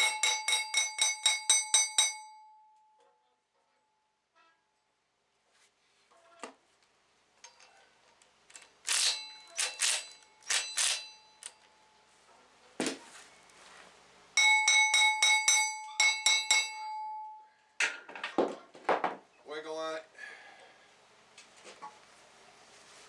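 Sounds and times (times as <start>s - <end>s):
hammer ringing on steel flywheel: 0.0s - 3.0s, 9.0s - 11.6s, 14.4s - 17.6s.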